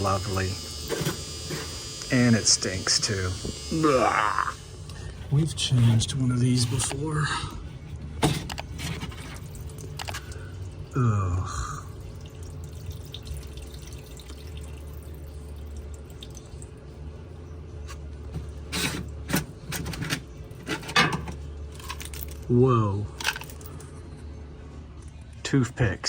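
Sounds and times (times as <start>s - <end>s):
water trickling and dripping: 11.9s - 17.2s.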